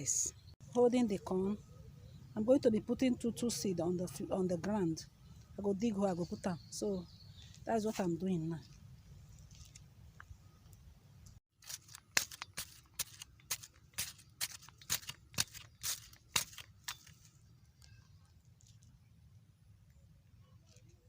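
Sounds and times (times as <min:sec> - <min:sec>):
hoe chopping into dry soil: 0:11.6 - 0:17.3.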